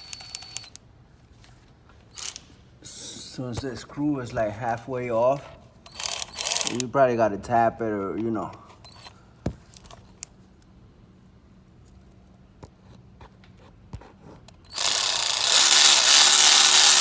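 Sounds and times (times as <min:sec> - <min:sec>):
power drill running: 0:05.9 - 0:06.8, 0:14.7 - 0:17.0.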